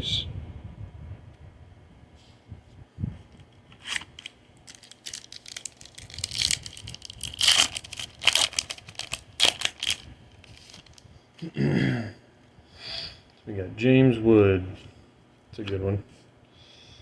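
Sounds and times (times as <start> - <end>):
foil wrapper crinkling and tearing: 3.8 - 11.0.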